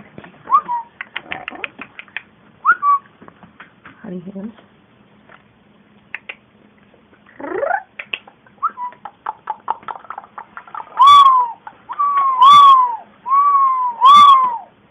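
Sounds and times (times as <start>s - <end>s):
loud arched animal calls: 7.3s - 13.1s, 13.8s - 14.7s.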